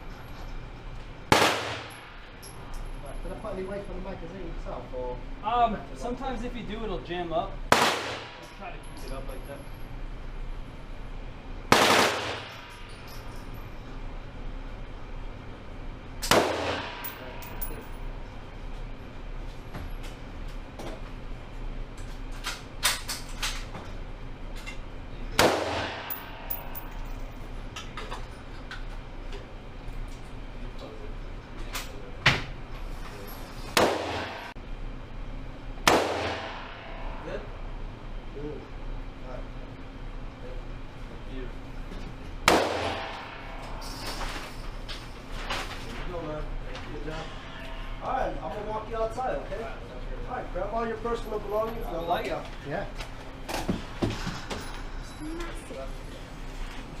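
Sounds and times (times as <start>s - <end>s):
rifle shots echoing indoors: 1.3s - 2.3s, 7.7s - 8.4s, 11.7s - 12.8s, 16.2s - 17.2s, 25.4s - 26.5s, 33.8s - 34.5s, 35.8s - 37.0s, 42.4s - 43.6s
light metallic clinks: 12.6s - 13.8s.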